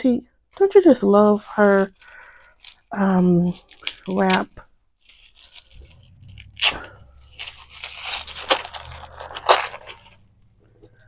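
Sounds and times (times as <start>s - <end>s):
package wrapping crinkling: 1.3s - 10.3s
sharp wrapping rips: 1.8s - 10.3s.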